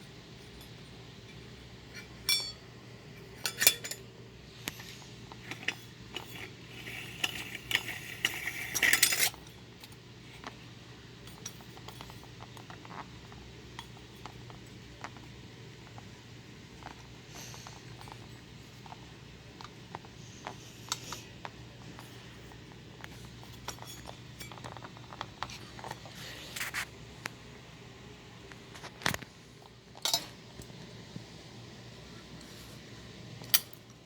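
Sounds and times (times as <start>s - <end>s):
faint steady hum: 0.0s - 34.0s
metal and glass parts clinking: 1.3s - 2.6s, 3.4s - 4.0s, 7.2s - 9.4s.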